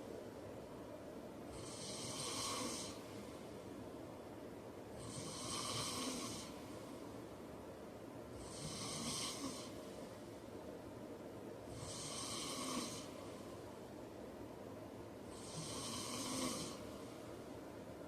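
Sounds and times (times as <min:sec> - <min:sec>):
man snoring: 0:01.6 - 0:03.0, 0:05.0 - 0:06.6, 0:08.4 - 0:09.8, 0:11.7 - 0:13.2, 0:15.3 - 0:17.0.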